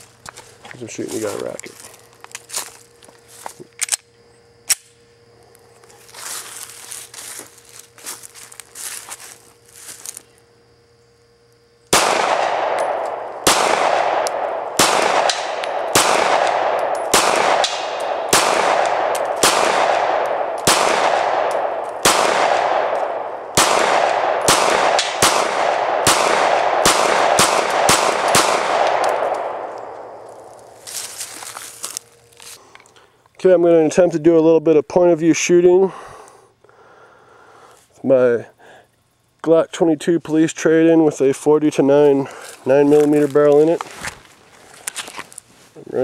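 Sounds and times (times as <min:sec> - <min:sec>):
pistol shots with echo: 0:11.9 - 0:30.5.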